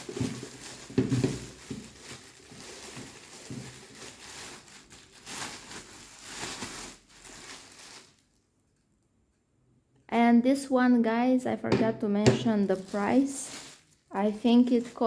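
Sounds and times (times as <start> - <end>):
packaging rustling and crinkling: 0.0 - 8.6, 12.3 - 15.0.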